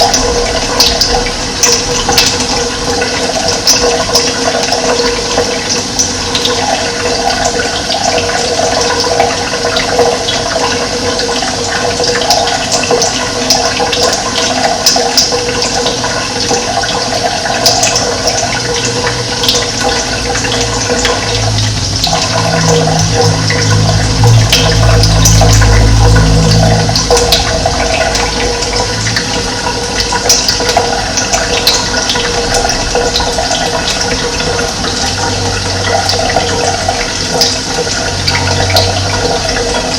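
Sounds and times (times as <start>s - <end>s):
running water: 0.0s - 39.9s
low hum: 20.0s - 31.5s.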